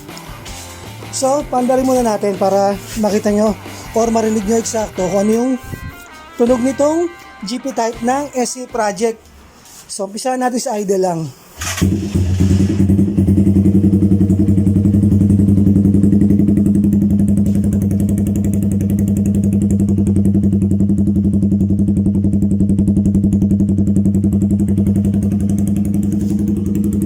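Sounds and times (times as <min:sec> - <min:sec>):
motorcycle engine idling: 0:00.0 - 0:07.0, 0:11.6 - 0:27.0.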